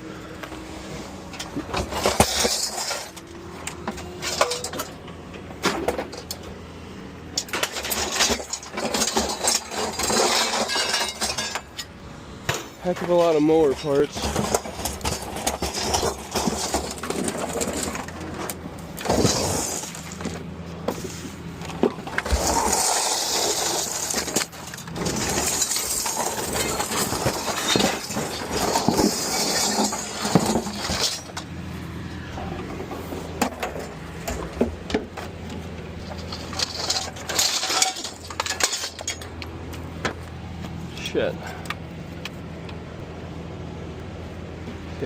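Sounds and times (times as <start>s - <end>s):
scrap metal clanking: 0.8s - 6.4s, 7.4s - 39.4s
low engine hum: 30.0s - 37.2s.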